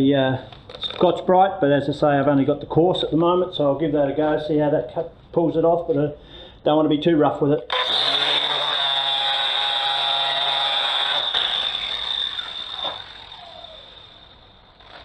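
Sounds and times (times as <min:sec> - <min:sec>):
angle grinder whining on steel: 0:07.7 - 0:15.0
low hum: 0:07.7 - 0:15.0.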